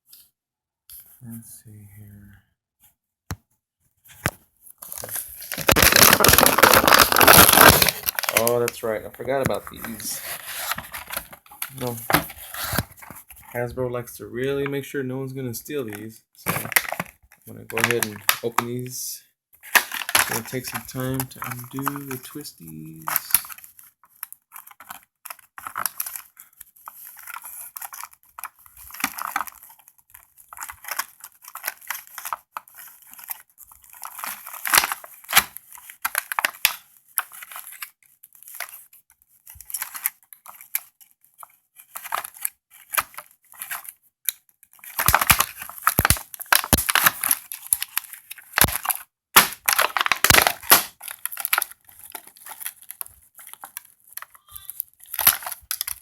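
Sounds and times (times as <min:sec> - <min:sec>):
packaging crumpling: 0:04.8 - 0:13.2, 0:16.5 - 0:18.8, 0:19.6 - 0:44.0, 0:44.7 - 0:56.0
plastic packaging crinkling: 0:04.8 - 0:13.2, 0:16.5 - 0:18.9, 0:19.6 - 0:56.0.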